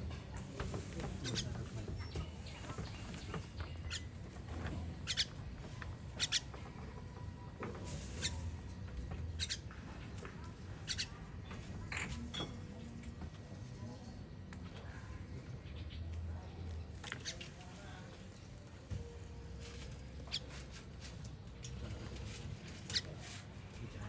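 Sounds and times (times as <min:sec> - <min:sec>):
baby bird squeaking chirps: 0:05.0 - 0:05.4, 0:06.1 - 0:06.6, 0:09.4 - 0:09.8.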